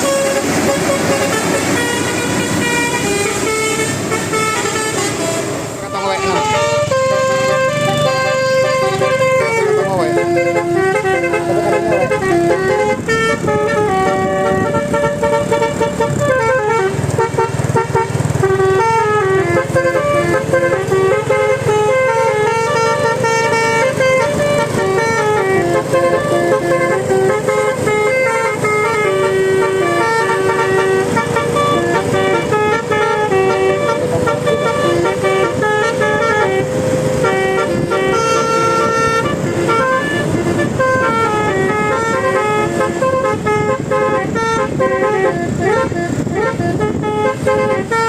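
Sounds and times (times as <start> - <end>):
multi-trumpet bus horn tune: 0.0 - 48.0.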